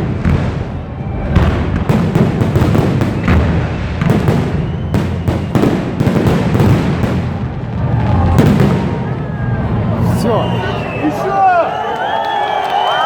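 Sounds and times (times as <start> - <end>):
fireworks bangs and crackling: 0.0 - 10.3.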